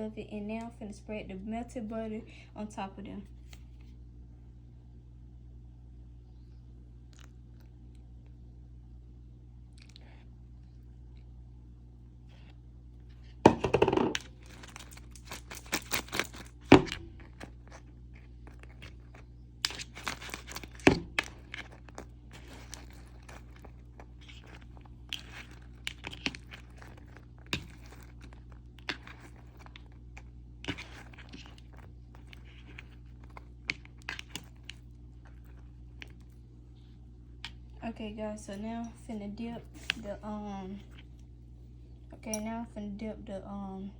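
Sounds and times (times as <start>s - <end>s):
steady low hum: 0.0s - 43.9s
utensil clicks and scrapes: 14.1s - 36.4s.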